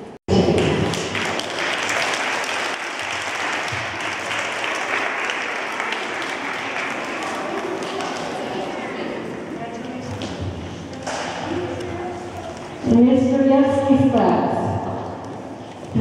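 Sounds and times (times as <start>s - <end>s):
crowd clapping: 0.3s - 9.0s.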